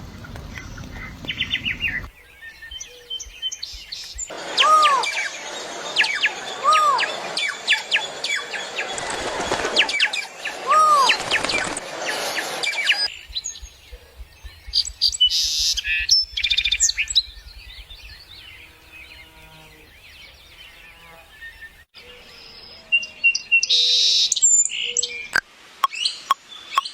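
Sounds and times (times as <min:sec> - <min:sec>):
birds chirping and whistling: 0:00.0 - 0:09.0, 0:11.1 - 0:22.5
arching whistled bird note: 0:00.1 - 0:08.9.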